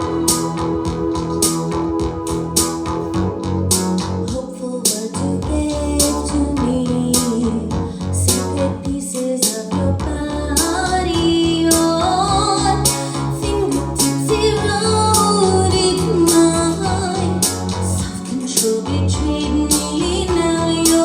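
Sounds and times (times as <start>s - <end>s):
drum hits: 0.0s - 4.4s
woman singing: 4.3s - 21.0s.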